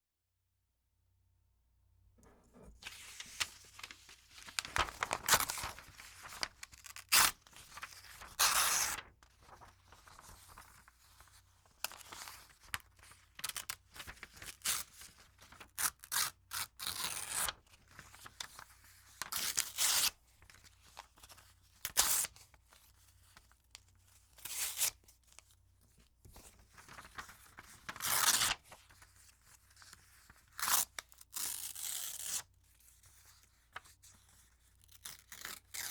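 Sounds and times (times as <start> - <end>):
paper crinkling: 2.2 - 15.9, 17.1 - 19.6, 26.3 - 30.0
paper tearing: 2.6 - 9.6, 15.6 - 17.6, 27.9 - 28.6, 30.6 - 32.4.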